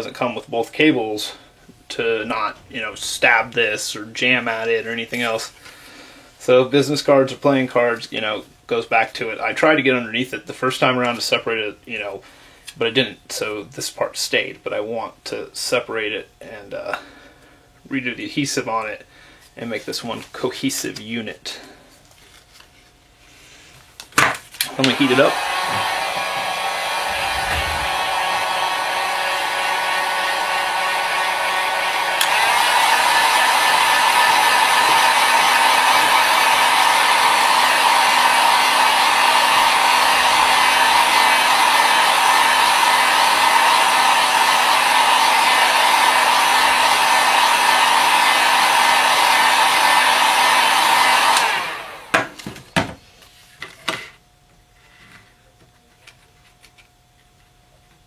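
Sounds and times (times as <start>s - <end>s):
hot-air blower running: 24.2s - 53.0s.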